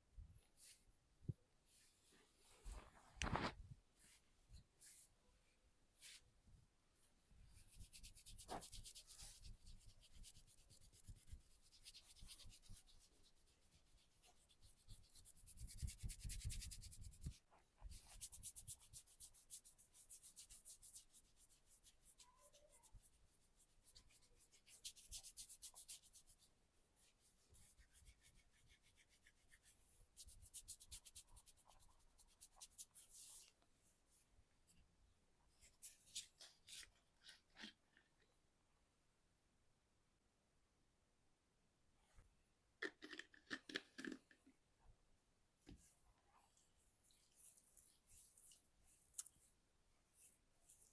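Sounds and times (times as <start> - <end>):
hands rubbing and scratching: 7.5 - 34.3, 35.6 - 37.8, 45.6 - 50.9.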